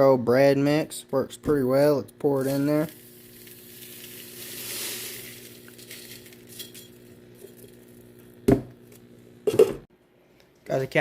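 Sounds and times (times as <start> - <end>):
breadcrumbs pouring into a bowl: 2.4 - 6.6.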